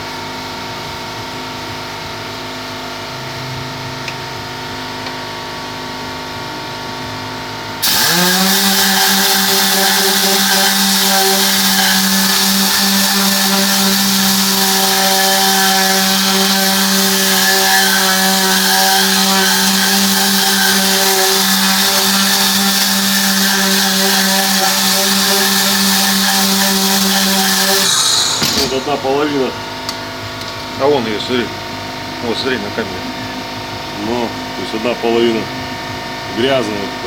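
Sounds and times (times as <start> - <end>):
air cleaning gun hissing: 7.8 - 29.6
motor humming: 7.8 - 30.6.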